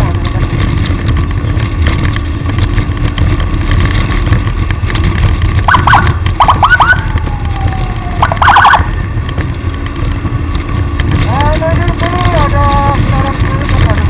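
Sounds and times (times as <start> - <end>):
engine and wind rumble: 0.0 - 14.0
siren whoops: 5.7 - 9.1.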